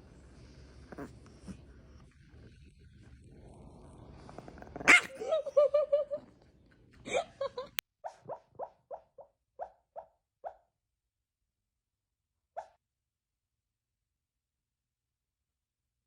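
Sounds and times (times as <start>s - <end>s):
dog barking and yelping: 4.4s - 6.2s, 8.0s - 10.6s.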